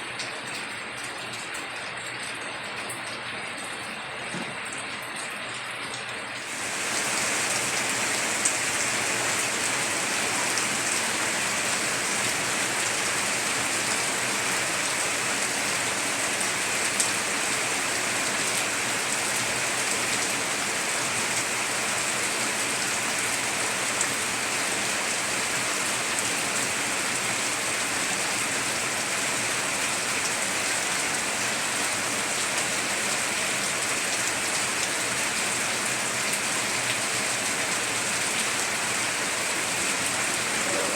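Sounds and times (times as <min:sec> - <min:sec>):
heavy rain on a tiled roof: 0:00.0 - 0:40.9.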